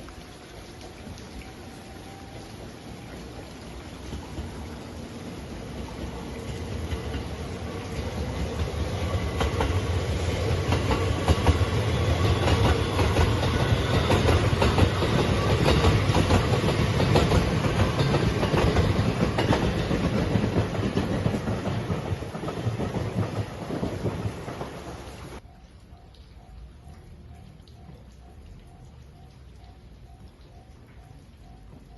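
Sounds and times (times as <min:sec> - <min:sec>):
train passing: 0:00.0 - 0:31.9
wheels clacking over rail joints: 0:02.6 - 0:25.4.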